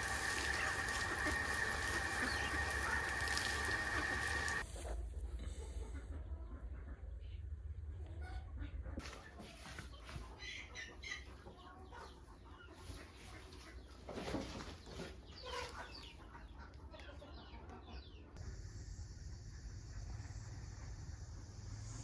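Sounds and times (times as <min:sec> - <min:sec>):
chickens clucking: 0:00.0 - 0:18.4
steady low hum: 0:18.4 - 0:22.0.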